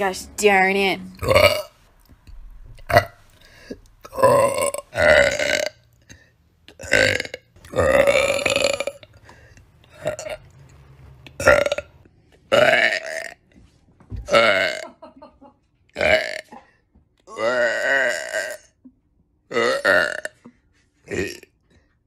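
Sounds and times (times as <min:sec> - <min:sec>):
woman burping: 0:01.1 - 0:01.7, 0:02.9 - 0:03.2, 0:04.0 - 0:05.8, 0:06.7 - 0:09.1, 0:11.4 - 0:11.9, 0:14.3 - 0:15.0, 0:16.0 - 0:18.9, 0:19.5 - 0:20.5.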